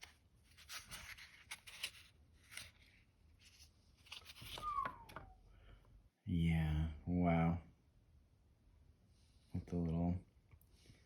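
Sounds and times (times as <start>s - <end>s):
packaging rustling and scraping: 0.0s - 4.7s
brief falling squeak: 4.4s - 5.4s.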